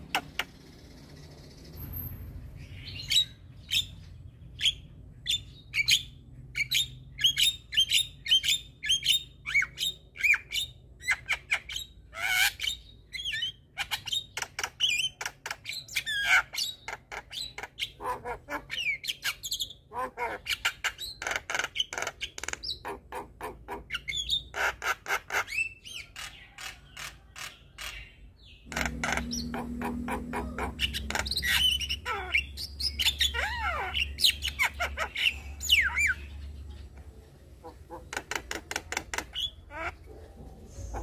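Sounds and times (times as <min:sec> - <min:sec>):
mynas calling: 0:16.2 - 0:19.1, 0:19.9 - 0:41.0
low steady hum: 0:28.7 - 0:37.9.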